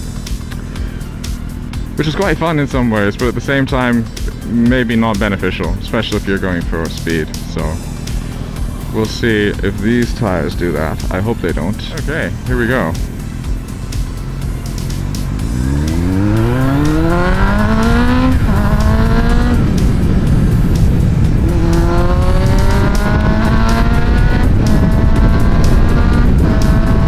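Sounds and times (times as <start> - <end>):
motorcycle engine accelerating: 0.0 - 27.0
wind rush on microphone: 17.0 - 27.0.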